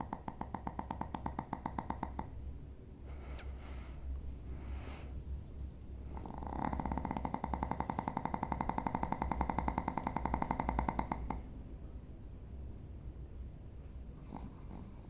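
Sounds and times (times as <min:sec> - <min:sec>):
animal snoring: 0:00.0 - 0:02.4, 0:06.1 - 0:11.5, 0:14.2 - 0:15.0.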